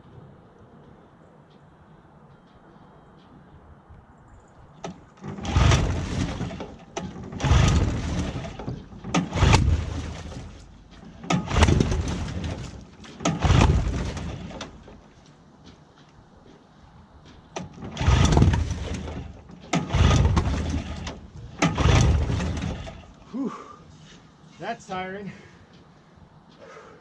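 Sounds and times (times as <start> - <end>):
recoil starter pulls: 4.8 - 15.4, 17.5 - 23.4
outboard motor turning over: 5.2 - 15.0, 17.6 - 23.4.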